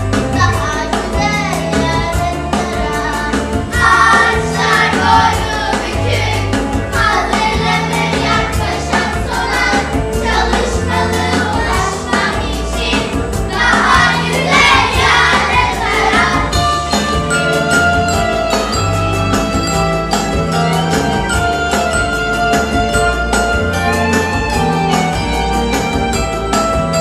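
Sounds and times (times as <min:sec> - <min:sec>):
music with steady beat and bass: 0:00.0 - 0:27.0
group of voices singing: 0:02.9 - 0:16.6.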